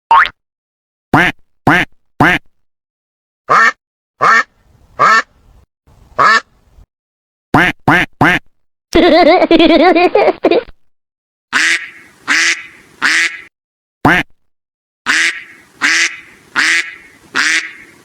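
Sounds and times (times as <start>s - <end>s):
duck quacking: 1.2s - 2.5s, 3.5s - 5.3s, 6.2s - 6.5s, 7.6s - 8.4s, 11.5s - 13.5s, 14.1s - 14.3s, 15.1s - 18.0s.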